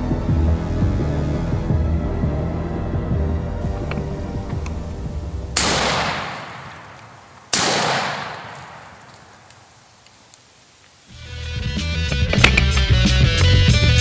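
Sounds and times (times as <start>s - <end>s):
tense background music: 0.0s - 6.2s
shotgun shots echoing: 3.7s - 9.9s.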